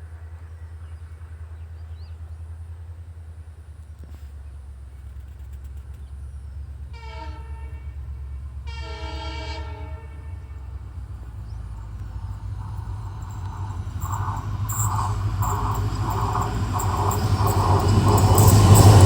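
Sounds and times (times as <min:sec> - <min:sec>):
diesel locomotive engine hum: 0:00.0 - 0:19.0
locomotive air horn blasts: 0:06.9 - 0:11.2.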